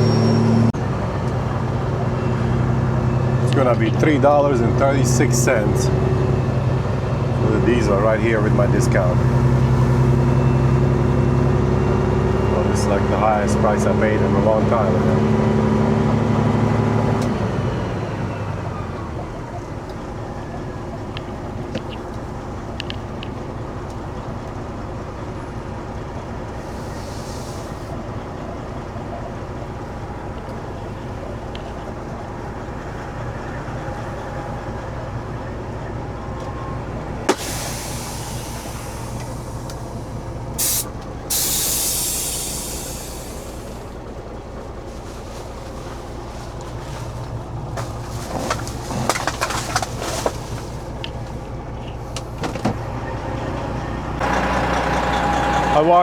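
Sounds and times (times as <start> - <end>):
diesel truck engine running: 0.0 - 56.0
air brake hiss: 26.6 - 28.0, 37.3 - 44.0
irregular rattling: 44.9 - 51.4.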